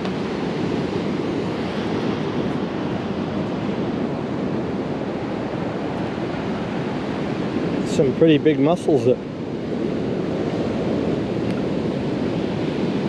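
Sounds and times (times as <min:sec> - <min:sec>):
surf washing onto beach: 0:00.0 - 0:13.0
wind on microphone: 0:00.0 - 0:13.0.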